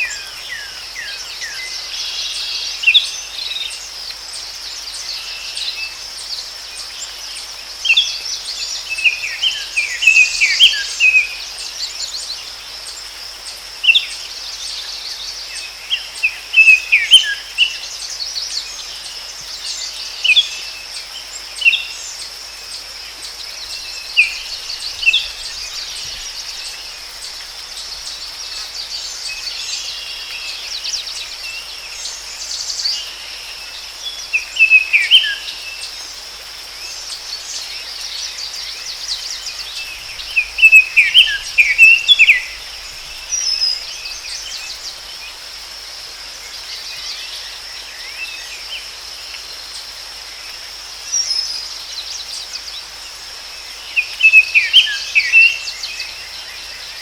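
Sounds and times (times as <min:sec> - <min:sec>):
insect chorus: 0:00.0 - 0:57.0
birds chirping: 0:38.5 - 0:45.1.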